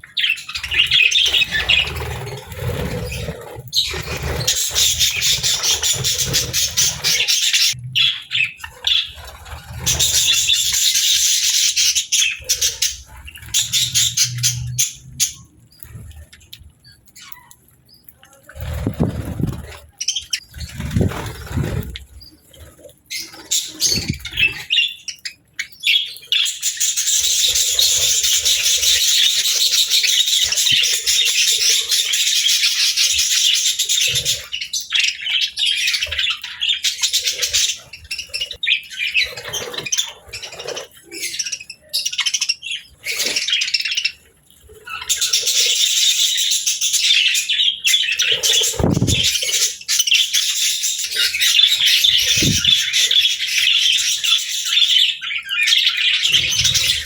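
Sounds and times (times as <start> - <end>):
budgerigars chirping: 0.1 - 15.4, 44.8 - 57.0.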